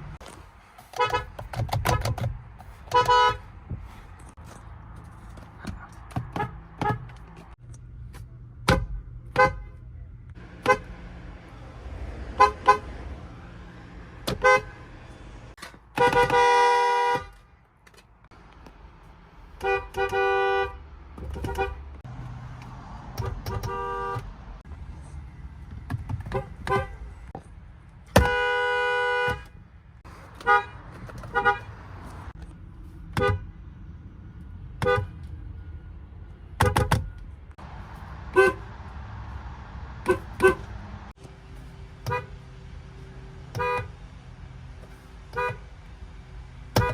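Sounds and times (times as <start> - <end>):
car horns honking: 0.9 - 2.3, 2.9 - 3.9, 6.1 - 7.6, 8.6 - 17.6, 19.6 - 22.1, 23.0 - 24.6, 26.0 - 27.4, 28.0 - 32.4, 33.1 - 33.6, 34.8 - 35.7, 36.5 - 41.2, 41.8 - 44.2, 44.9 - 45.9, 46.6 - 46.9.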